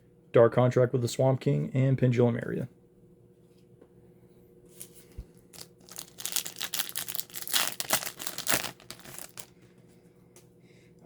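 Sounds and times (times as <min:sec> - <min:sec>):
foil wrapper crinkling and tearing: 0:05.5 - 0:09.5.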